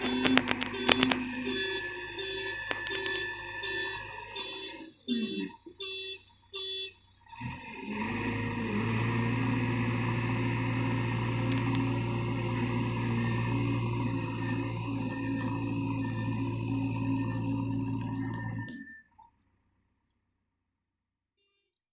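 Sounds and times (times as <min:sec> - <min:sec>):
steady sustained drone: 0:00.0 - 0:05.5, 0:07.4 - 0:19.0
pulsing note pattern: 0:00.0 - 0:06.1, 0:09.4 - 0:19.1.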